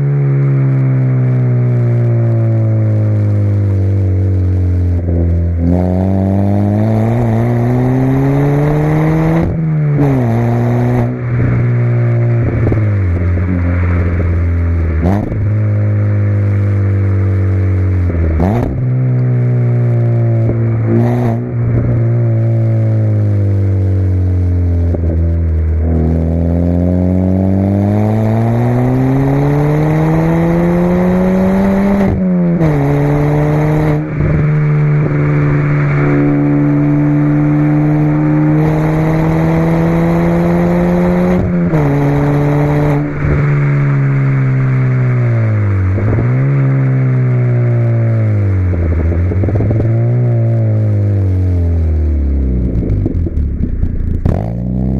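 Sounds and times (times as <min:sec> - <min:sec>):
car engine through exhaust: 0:00.0 - 0:54.9
exhaust cracks: 0:41.4 - 0:54.9.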